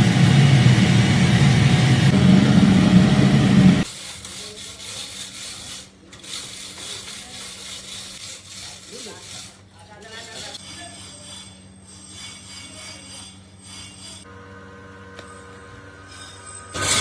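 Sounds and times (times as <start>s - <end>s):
workshop machine humming and rasping: 0.0s - 17.0s.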